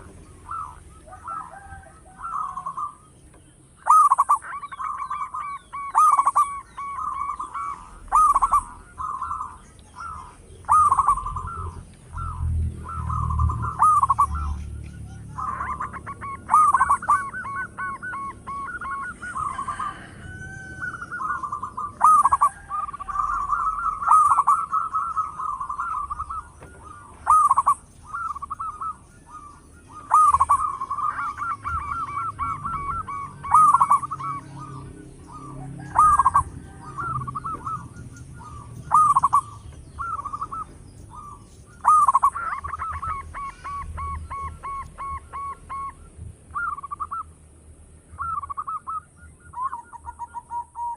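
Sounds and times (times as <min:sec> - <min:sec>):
dove cooing: 0:00.0 - 0:47.3, 0:48.1 - 0:50.9.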